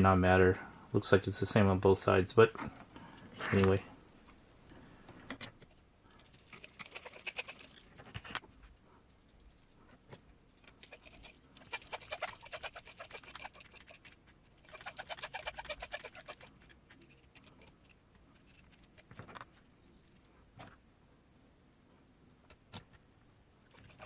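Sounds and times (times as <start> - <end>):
rapid small clicks and ticks: 4.7 - 8.4, 9.0 - 20.4, 23.7 - 24.0.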